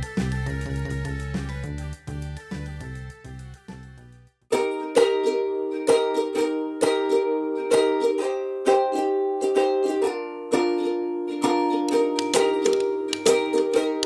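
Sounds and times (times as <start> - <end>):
plucked string music: 0.0 - 14.0.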